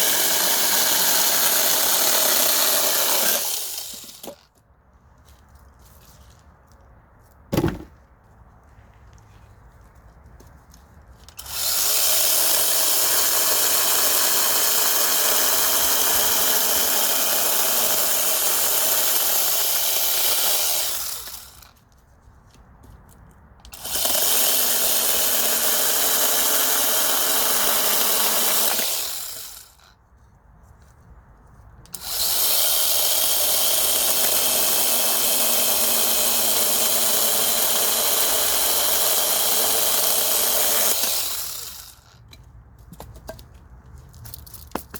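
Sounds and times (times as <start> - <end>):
mini chainsaw whining: 0.0 - 4.4, 11.4 - 21.7, 23.7 - 29.9, 31.9 - 42.2.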